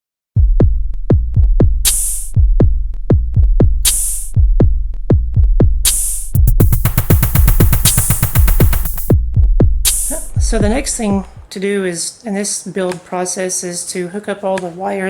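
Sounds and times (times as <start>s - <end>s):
electronic music with drum-machine beat: 1.1s - 11.5s.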